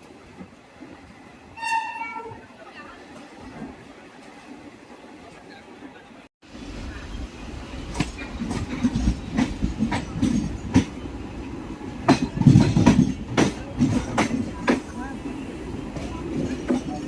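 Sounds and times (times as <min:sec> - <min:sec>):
train rumble: 0:00.0 - 0:17.0
wheels clattering over rail joints: 0:07.9 - 0:11.0.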